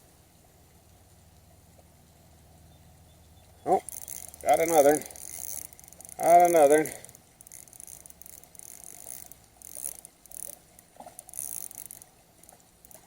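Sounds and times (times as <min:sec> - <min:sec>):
fishing reel clicking: 0:03.7 - 0:13.0.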